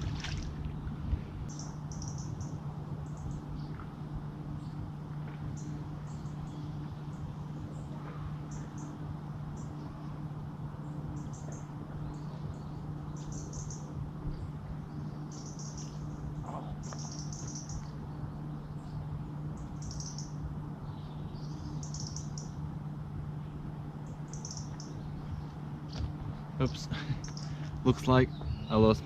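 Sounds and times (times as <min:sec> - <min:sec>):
steady low hum: 0:00.0 - 0:29.0
small bird chirping: 0:01.5 - 0:03.7, 0:11.2 - 0:19.0, 0:19.6 - 0:22.6, 0:24.0 - 0:26.0, 0:26.6 - 0:27.6, 0:28.2 - 0:29.0.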